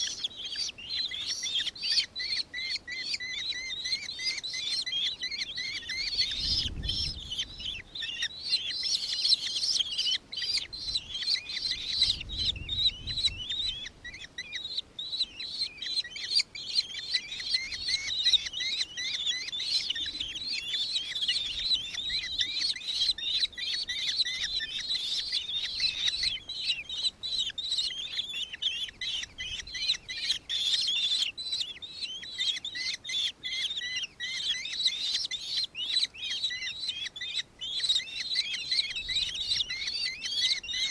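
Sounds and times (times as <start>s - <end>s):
birds chattering: 0.0s - 40.9s
wind rumble on microphone: 6.2s - 7.8s, 10.8s - 14.1s.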